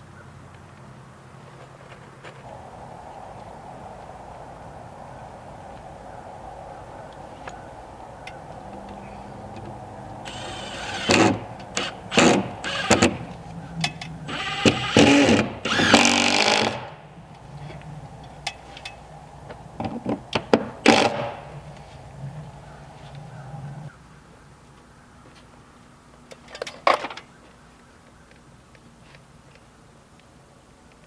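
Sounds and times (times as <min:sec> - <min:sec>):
power tool bursts: 0:10.2 - 0:17.1, 0:20.6 - 0:21.6.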